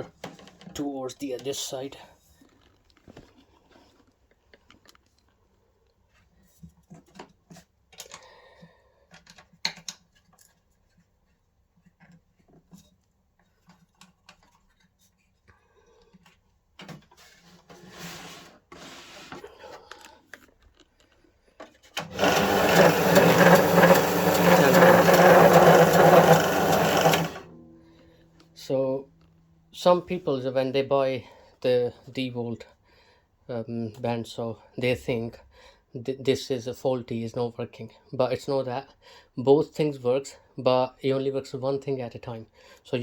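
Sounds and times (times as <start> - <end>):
electric motor running: 22.0 - 27.5
clicks and rubbing of knobs: 22.0 - 27.6.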